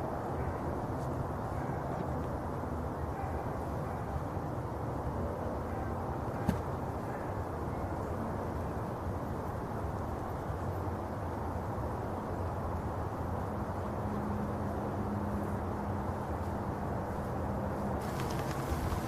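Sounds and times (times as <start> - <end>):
outdoor background noise: 0.0 - 19.0.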